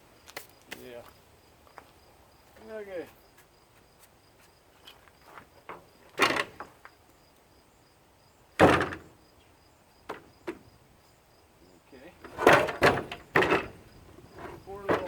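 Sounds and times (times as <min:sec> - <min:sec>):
crickets chirping: 0:00.0 - 0:15.0
mower parts scraping clunks: 0:04.8 - 0:06.8, 0:12.2 - 0:15.0.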